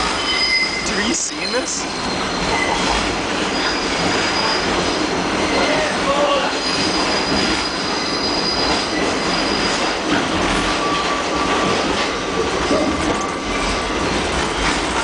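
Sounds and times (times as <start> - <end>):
high-pitched wheel squeal: 0.0 - 0.9, 1.9 - 10.0
train rumble and rattle: 0.0 - 15.0.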